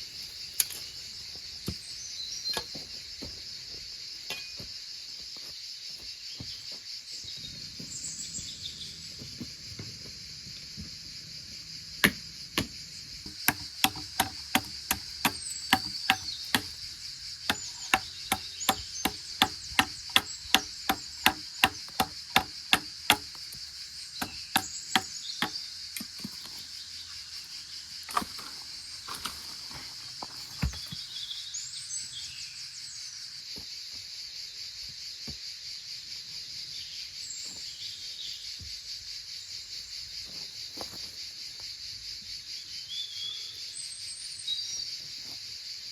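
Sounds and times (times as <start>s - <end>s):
insect chirring: 0.0s - 45.9s
hand tool knocking: 12.0s - 16.8s, 17.5s - 23.4s, 24.2s - 26.2s.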